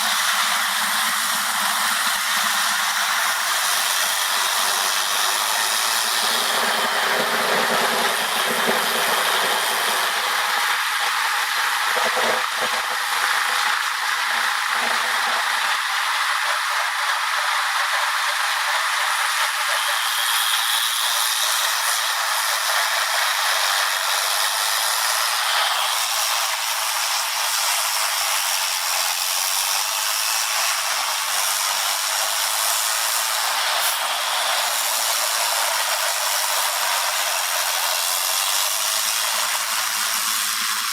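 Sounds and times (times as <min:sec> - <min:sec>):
heavy machinery rattling: 0:04.4 - 0:17.2.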